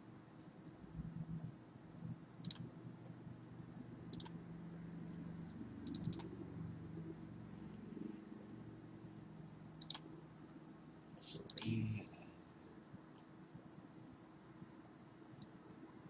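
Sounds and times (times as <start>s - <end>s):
faint low hum: 0.0s - 16.0s
computer clicks: 2.4s - 2.7s, 4.1s - 4.4s, 5.8s - 6.3s, 9.8s - 10.1s, 11.4s - 11.8s.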